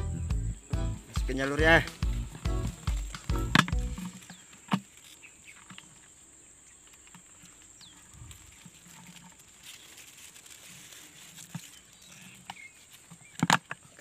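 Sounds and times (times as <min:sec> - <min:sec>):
faint high hiss: 0:00.0 - 0:13.0
small clicks and rustles: 0:04.0 - 0:14.0.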